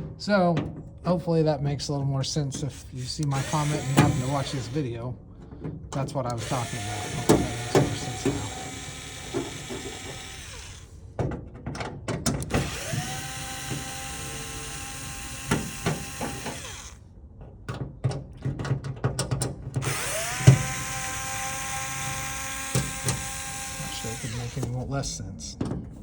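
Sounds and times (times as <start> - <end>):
small electric motor running: 2.7 - 4.9, 6.3 - 11.0, 12.4 - 17.0, 19.8 - 24.9.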